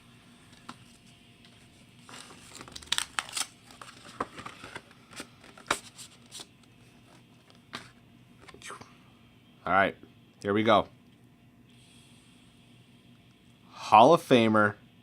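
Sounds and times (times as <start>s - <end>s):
plastic packaging crinkling and tearing: 2.0s - 6.5s.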